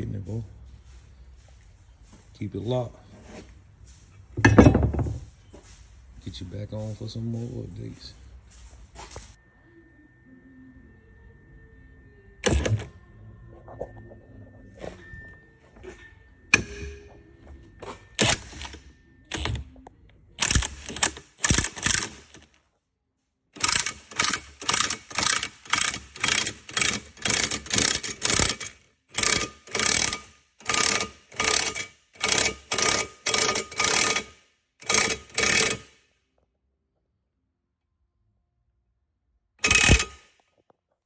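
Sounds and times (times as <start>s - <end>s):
metal knocks and clinks: 4.4s - 5.3s
ratchet wrench clicking: 20.4s - 22.5s, 23.6s - 36.0s, 39.6s - 40.3s.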